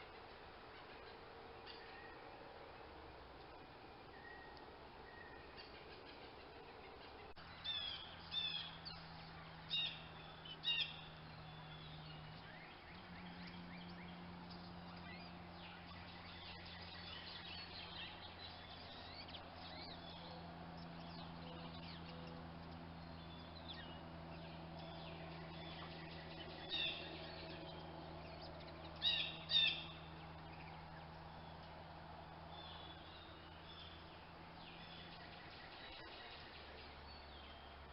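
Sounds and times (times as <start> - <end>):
steady low hum: 0.0 - 37.9
wild birds chirping: 0.0 - 37.9.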